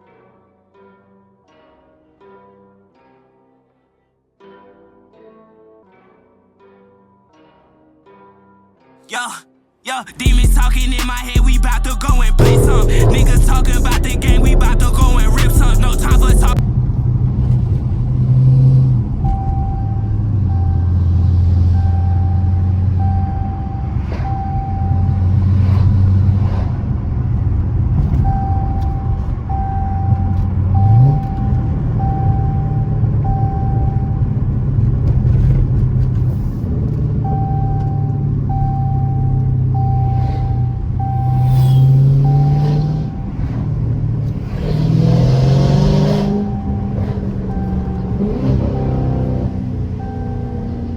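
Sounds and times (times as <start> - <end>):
high beeps: 10.2 - 16.6, 19.3 - 25.7, 28.2 - 34.3, 37.2 - 43.4, 45.4 - 50.9
car engine deep rumble: 10.3 - 50.9.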